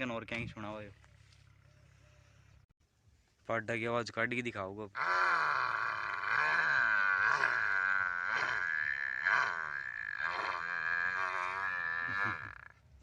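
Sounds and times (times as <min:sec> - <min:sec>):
boy imitating buffalo call: 0:05.0 - 0:12.7.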